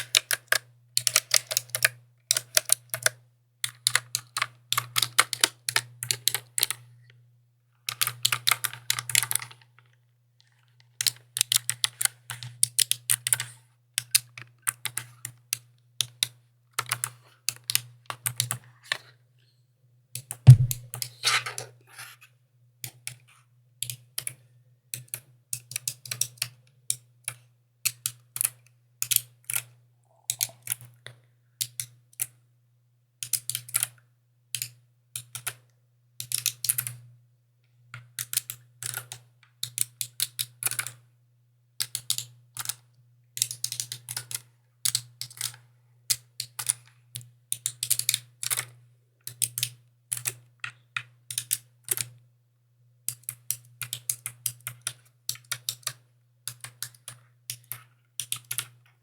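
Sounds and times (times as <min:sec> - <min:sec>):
mechanical keyboard typing: 0:00.2 - 0:03.1, 0:20.5 - 0:20.8.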